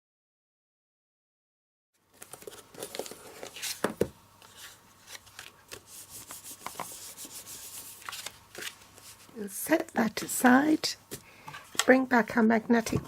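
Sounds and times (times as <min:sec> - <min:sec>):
paper rustling and crinkling: 0:02.1 - 0:09.4.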